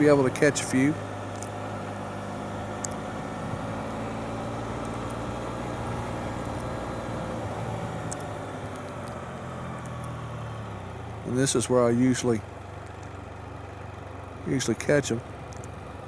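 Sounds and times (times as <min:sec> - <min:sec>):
vehicle engine idling: 0:00.0 - 0:16.0
faint ticks: 0:12.8 - 0:13.2, 0:15.5 - 0:15.8.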